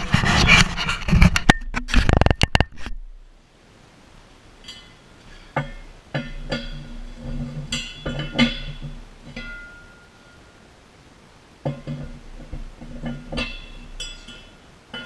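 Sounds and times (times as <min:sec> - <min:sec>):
steel parts clinking: 0:04.6 - 0:10.5, 0:11.6 - 0:15.0.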